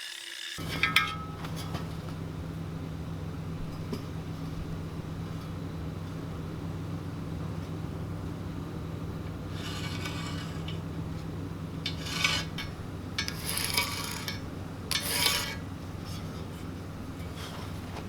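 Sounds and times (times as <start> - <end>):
steady low hum: 0.6 - 18.0
metal scraping on steel tank: 9.5 - 10.9, 11.8 - 16.4.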